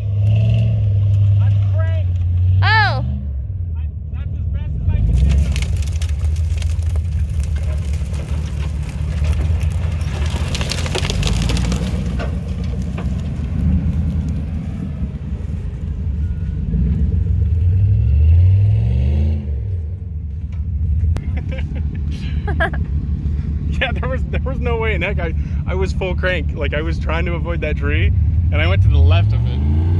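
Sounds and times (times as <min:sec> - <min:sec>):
rattling: 0:00.0 - 0:02.6, 0:05.0 - 0:17.5
engine running hard off-road: 0:00.0 - 0:29.9.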